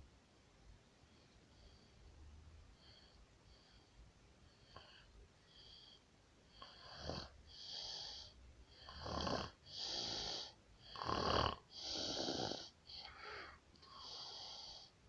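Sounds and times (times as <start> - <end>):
pig snoring: 6.6 - 13.1.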